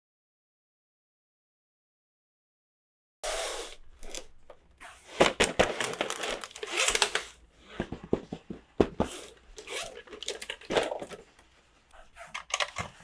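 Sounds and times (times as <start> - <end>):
plastic packaging crinkling: 5.1 - 7.4, 9.6 - 11.4.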